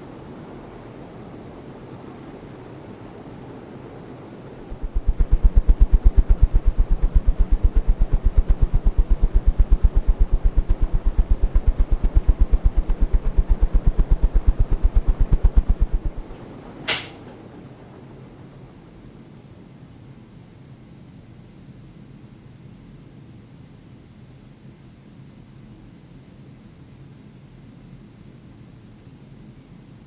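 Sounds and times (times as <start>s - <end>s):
ceiling fan blades buffeting air: 0.0s - 22.0s
sharp click: 16.9s - 17.4s.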